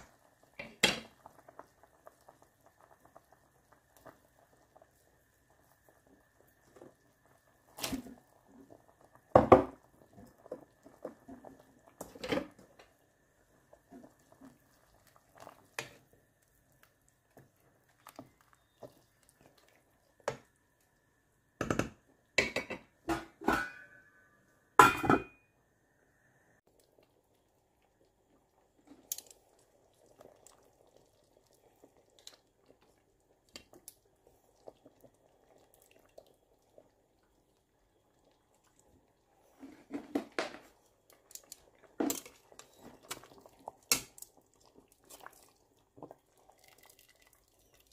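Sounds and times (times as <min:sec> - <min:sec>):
metal cookware clanking: 0:21.6 - 0:25.4.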